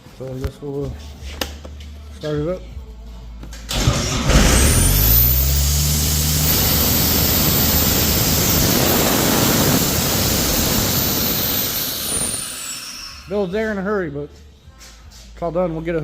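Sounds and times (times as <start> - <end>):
diesel engine starting and running: 3.7 - 14.0.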